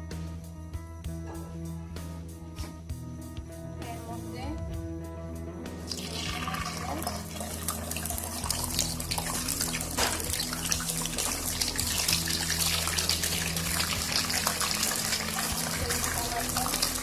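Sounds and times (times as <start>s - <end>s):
spices sizzling in hot oil: 5.8s - 17.0s.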